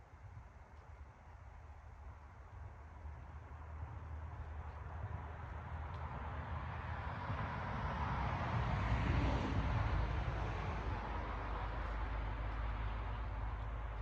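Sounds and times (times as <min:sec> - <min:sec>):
passing vehicle rumbling: 0:05.1 - 0:14.0.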